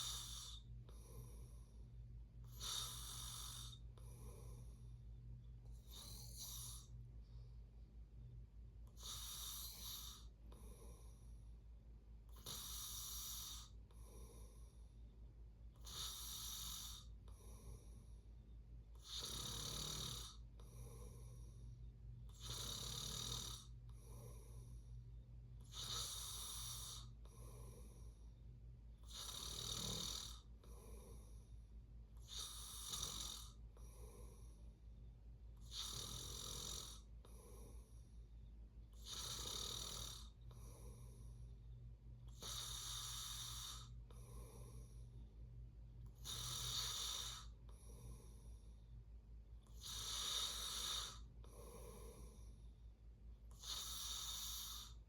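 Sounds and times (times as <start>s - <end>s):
person snoring: 0.0s - 1.6s, 2.5s - 4.8s, 5.8s - 7.0s, 15.8s - 17.7s, 19.0s - 21.5s, 22.3s - 24.6s, 25.6s - 28.1s, 29.1s - 31.4s, 32.2s - 34.5s, 35.6s - 37.9s, 39.0s - 41.2s, 42.3s - 44.9s, 46.2s - 48.5s, 49.7s - 52.4s, 53.5s - 55.0s
soft breath: 0.0s - 19.2s, 20.0s - 22.4s, 23.5s - 29.2s, 29.9s - 55.0s
steady low hum: 0.0s - 55.0s.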